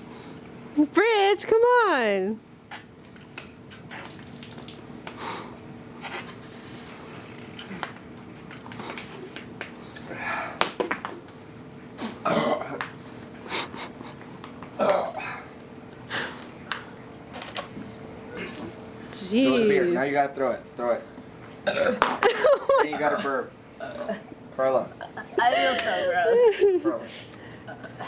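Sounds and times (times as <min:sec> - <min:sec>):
faint steady hum: 0:00.0 - 0:28.0
people gulping beer: 0:03.7 - 0:11.0.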